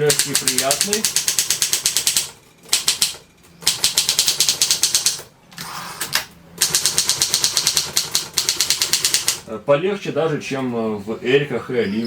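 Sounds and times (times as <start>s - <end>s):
typewriter keys clacking: 0.0s - 5.3s, 6.6s - 9.4s.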